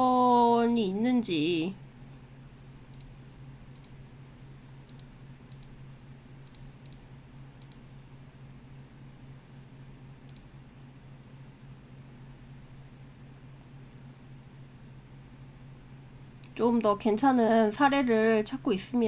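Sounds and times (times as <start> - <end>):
low electrical hum: 0.0 - 19.0
computer mouse clicking: 2.9 - 4.0, 4.8 - 5.8, 6.4 - 7.9, 10.2 - 10.5.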